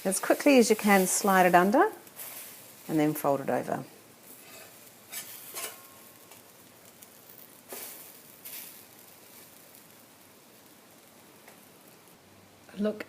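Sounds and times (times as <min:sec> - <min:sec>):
spatula scraping a pan: 0:00.0 - 0:02.9, 0:04.3 - 0:06.4
pancakes sizzling in a frying pan: 0:00.0 - 0:13.0.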